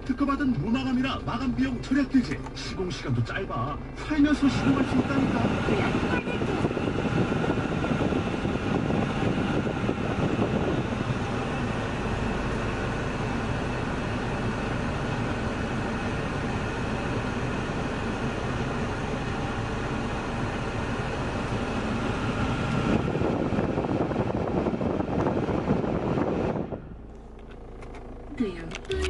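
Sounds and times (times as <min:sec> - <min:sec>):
road and engine noise in car cabin: 0:00.0 - 0:29.0.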